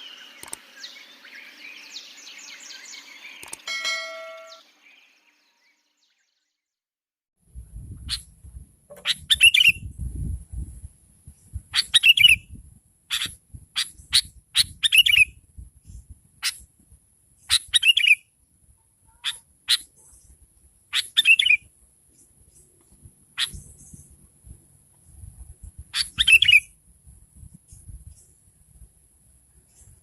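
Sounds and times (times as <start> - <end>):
bulbul chirping and warbling: 3.3 - 4.6.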